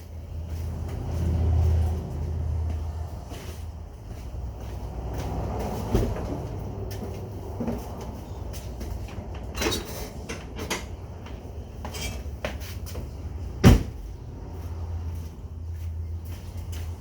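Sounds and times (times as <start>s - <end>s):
loud thump: 13.6s - 14.0s.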